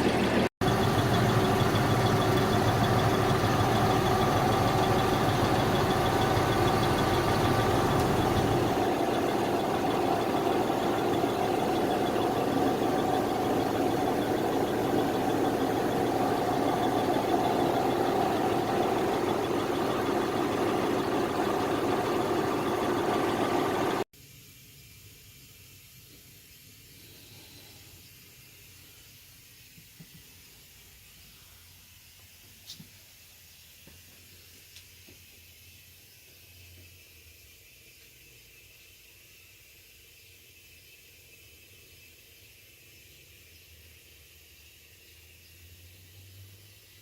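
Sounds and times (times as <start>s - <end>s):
diesel bus engine idling: 0.0s - 24.1s.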